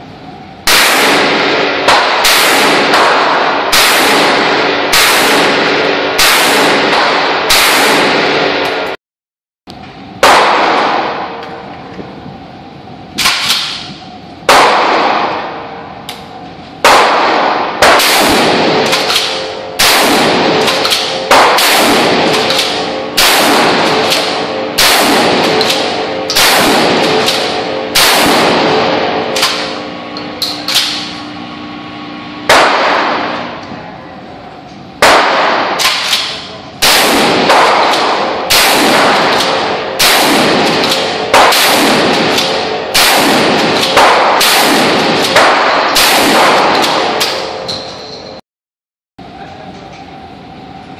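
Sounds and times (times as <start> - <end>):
gunshots with ringing decay: 0.7 - 8.9, 10.2 - 11.4, 14.5 - 15.7, 16.8 - 30.0, 32.4 - 33.6, 35.0 - 47.6.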